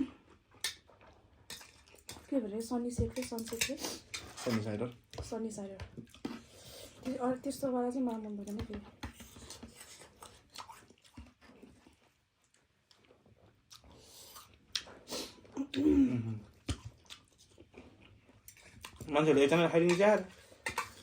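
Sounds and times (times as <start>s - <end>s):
chewing and mouth noises: 0.0s - 2.3s, 5.9s - 7.2s, 8.4s - 21.0s.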